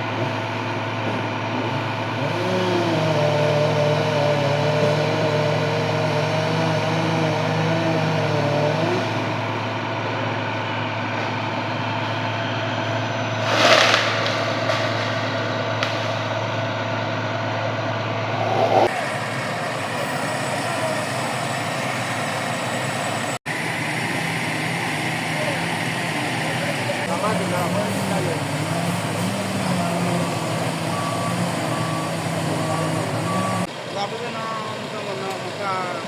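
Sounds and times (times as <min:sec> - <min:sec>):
vehicle engine running: 0:00.0 - 0:20.0.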